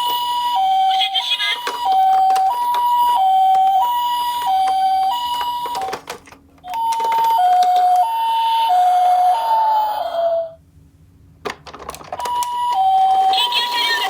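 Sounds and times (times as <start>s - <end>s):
toy two-tone siren: 0.0s - 10.6s, 12.2s - 14.0s
clicks and rattles: 1.6s - 3.8s, 4.4s - 8.1s, 11.4s - 12.5s.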